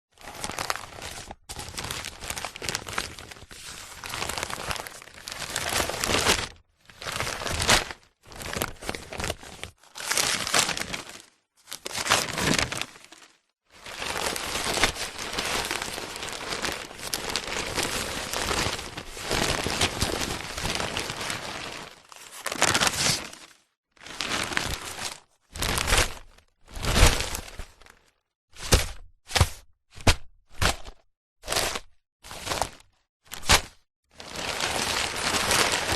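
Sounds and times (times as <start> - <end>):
newspaper rustling: 0.2 - 7.6, 11.8 - 25.8.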